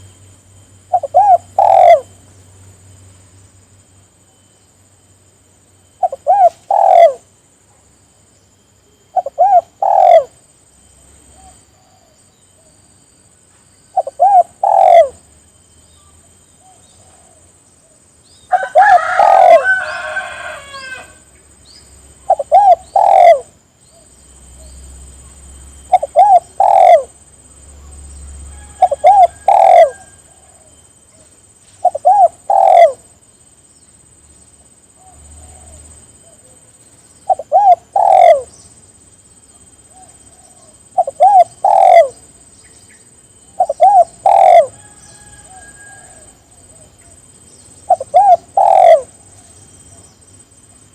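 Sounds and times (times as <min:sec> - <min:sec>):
dove cooing: 0:00.9 - 0:02.2, 0:06.0 - 0:07.3, 0:09.1 - 0:10.4, 0:13.9 - 0:15.2, 0:18.5 - 0:21.1, 0:22.2 - 0:23.5, 0:25.8 - 0:27.2, 0:28.5 - 0:30.8, 0:31.8 - 0:33.1, 0:35.0 - 0:36.6, 0:37.2 - 0:38.6, 0:39.9 - 0:42.3, 0:43.5 - 0:47.2, 0:47.8 - 0:50.1.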